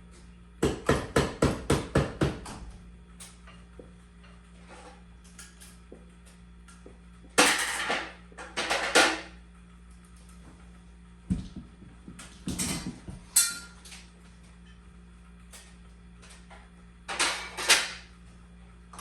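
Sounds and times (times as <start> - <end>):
metal tools clattering: 13.3 - 14.0.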